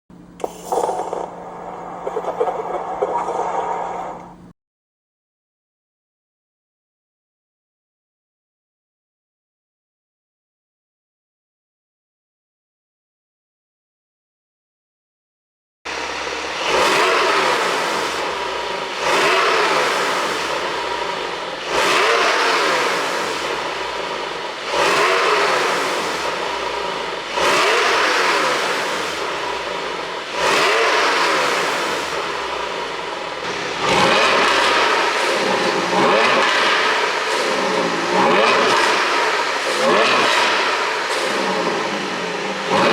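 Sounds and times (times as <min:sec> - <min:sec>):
car engine revving: 0:00.2 - 0:04.5, 0:15.9 - 0:42.9
exhaust pops and crackles: 0:02.0 - 0:04.5, 0:16.6 - 0:42.9.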